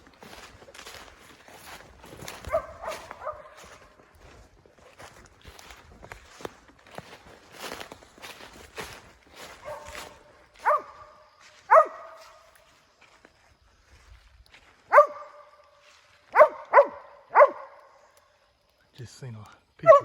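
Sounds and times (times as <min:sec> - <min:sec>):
footsteps: 0:00.0 - 0:17.1
dog barking: 0:02.3 - 0:04.0, 0:09.6 - 0:12.4, 0:14.9 - 0:15.6, 0:16.3 - 0:17.9, 0:19.8 - 0:20.0.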